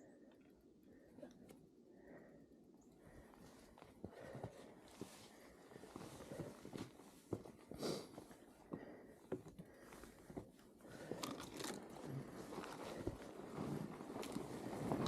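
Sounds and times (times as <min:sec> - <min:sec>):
snow crunching under bike tyres: 0:09.7 - 0:15.0.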